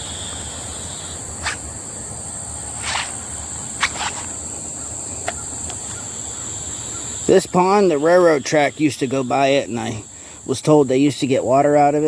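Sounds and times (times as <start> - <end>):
insects droning: 0.0 - 12.0
short scuffs or taps: 3.8 - 4.3.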